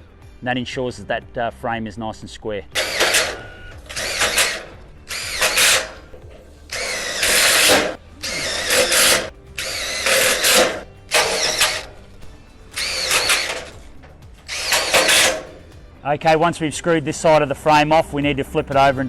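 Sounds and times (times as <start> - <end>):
power drill driving screws: 2.7 - 15.8.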